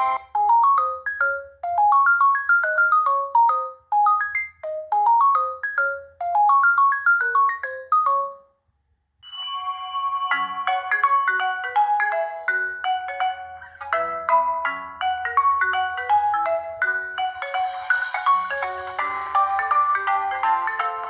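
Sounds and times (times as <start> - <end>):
dense phone ringtone: 0.0 - 0.2
phone ringtone melody: 0.0 - 8.4, 9.2 - 21.0.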